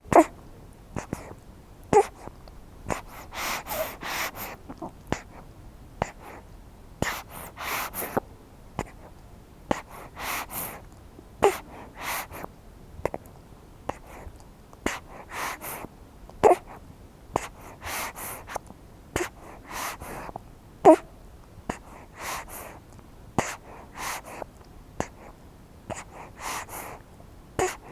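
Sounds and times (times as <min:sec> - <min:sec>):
baby snuffling through nose: 0:01.0 - 0:02.3, 0:02.9 - 0:05.4, 0:07.0 - 0:08.2, 0:09.7 - 0:10.8, 0:11.4 - 0:12.5, 0:14.9 - 0:16.8, 0:17.4 - 0:18.6, 0:19.2 - 0:20.3, 0:21.7 - 0:22.8, 0:23.4 - 0:27.0, 0:27.6 - 0:27.9.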